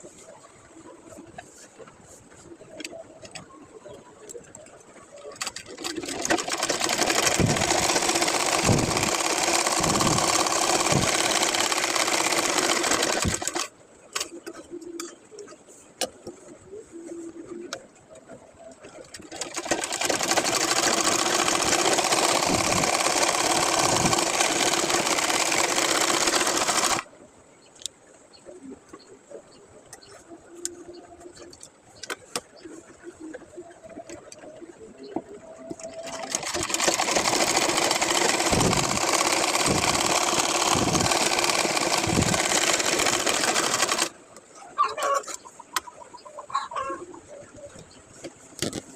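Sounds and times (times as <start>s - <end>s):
sewing machine stitching: 5.4s - 13.7s, 19.2s - 27.0s, 35.8s - 44.1s.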